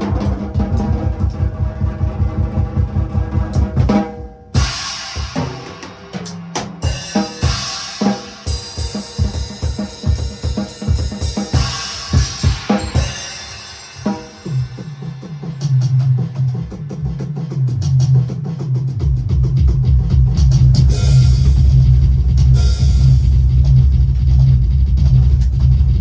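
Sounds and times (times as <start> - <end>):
drums and bass drum rolls: 0.0 - 26.0
cymbal crashes: 4.6 - 17.0, 20.9 - 23.6.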